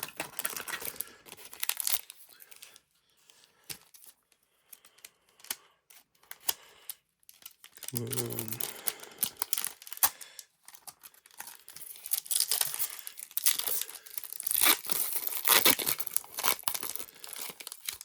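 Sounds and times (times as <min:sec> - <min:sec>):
foil wrapper tearing and crinkling: 0:00.0 - 0:02.8, 0:07.3 - 0:18.0.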